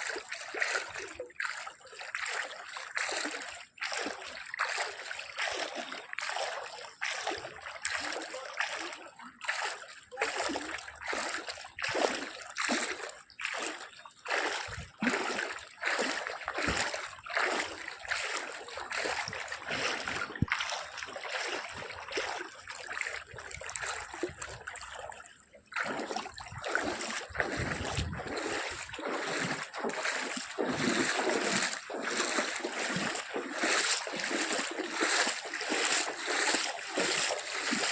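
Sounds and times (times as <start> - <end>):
floodwater splashing: 0.0 - 37.9.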